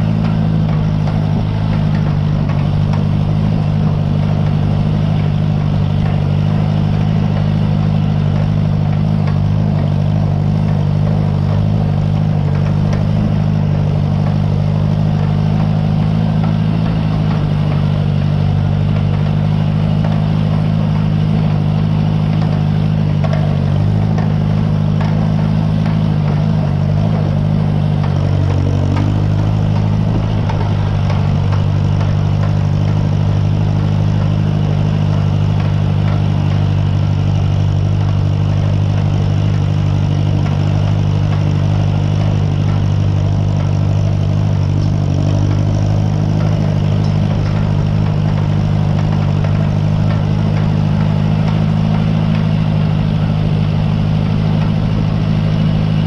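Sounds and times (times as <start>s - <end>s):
tractor engine running: 0.0s - 56.0s.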